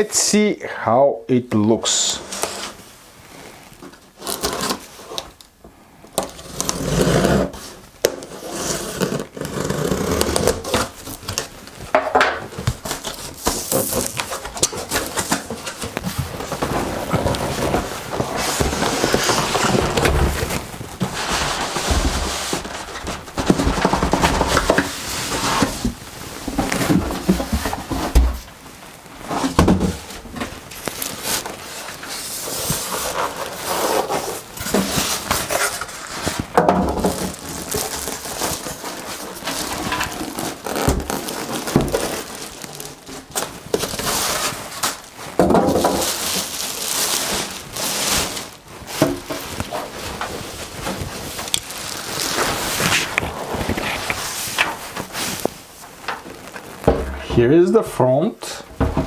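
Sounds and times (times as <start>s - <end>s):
packaging rustling: 2.3s - 57.4s
knocks and thumps of handling: 10.3s - 32.0s, 34.6s - 57.6s, 58.6s - 59.0s.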